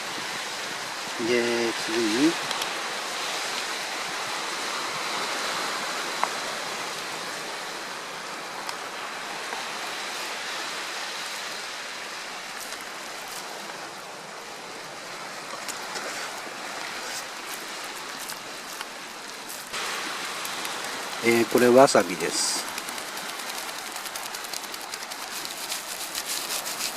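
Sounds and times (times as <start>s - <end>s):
steady rushing noise: 16.4s - 26.9s.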